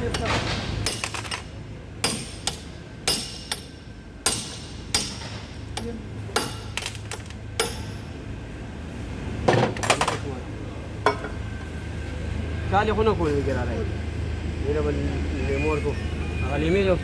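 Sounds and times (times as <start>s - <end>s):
hammer striking metal: 0.0s - 1.4s, 2.0s - 8.1s.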